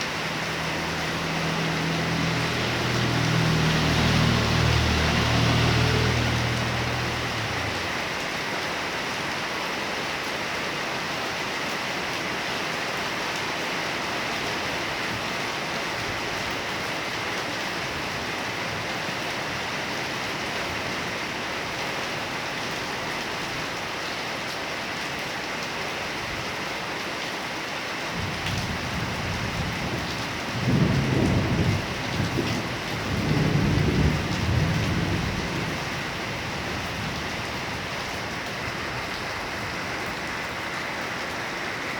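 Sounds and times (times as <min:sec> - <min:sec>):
heavy rain falling: 0:00.0 - 0:41.9
low thunder rumble: 0:28.2 - 0:38.3.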